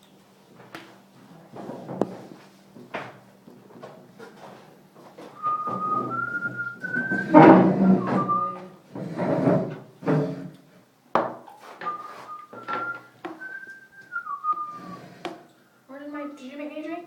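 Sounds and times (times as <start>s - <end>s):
person whistling a tune: 5.4s - 8.7s, 11.8s - 15.1s.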